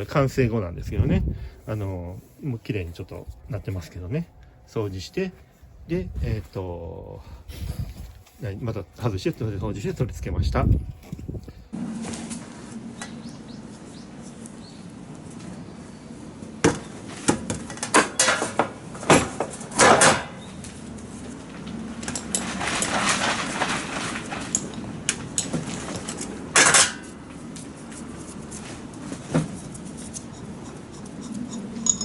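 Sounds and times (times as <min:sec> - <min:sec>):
low steady hum: 0:00.0 - 0:17.0
scraping: 0:22.0 - 0:32.0
metal parts clinking: 0:31.2 - 0:32.0.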